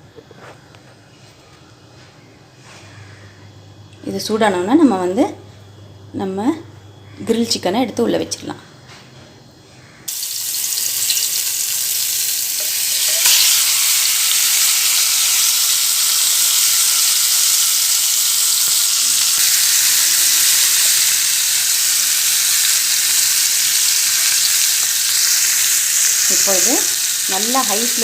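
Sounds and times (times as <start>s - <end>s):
chicken sizzling in a pan: 10.1s - 28.0s.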